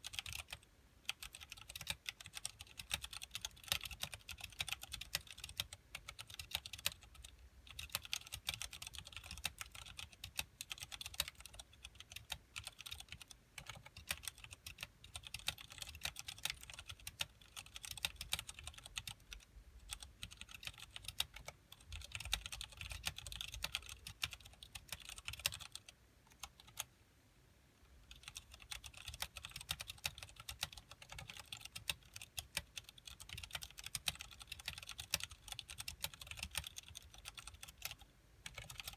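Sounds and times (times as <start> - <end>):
mechanical keyboard typing: 0.0 - 26.9, 28.1 - 38.9.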